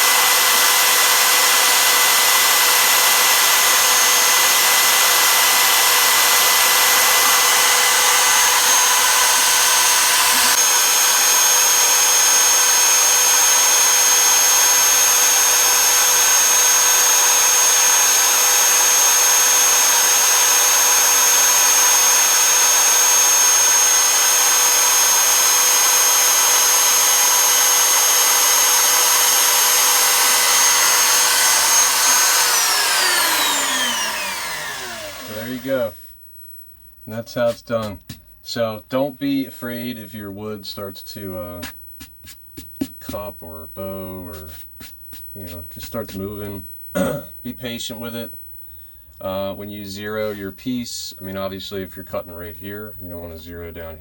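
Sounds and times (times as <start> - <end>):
router spindle motor whining: 0.0 - 36.0.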